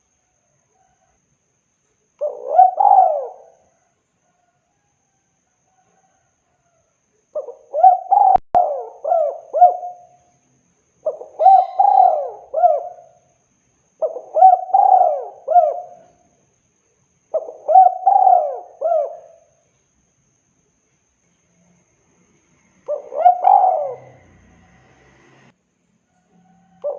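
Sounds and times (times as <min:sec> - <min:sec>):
dove cooing: 0:02.2 - 0:03.9, 0:07.4 - 0:10.2, 0:11.0 - 0:13.2, 0:14.0 - 0:16.2, 0:17.4 - 0:19.5, 0:22.8 - 0:24.9, 0:26.7 - 0:26.9.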